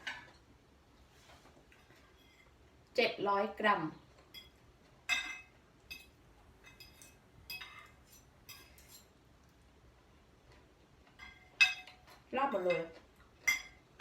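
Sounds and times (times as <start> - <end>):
cutlery clinking on plates: 4.2 - 9.2, 10.5 - 14.0.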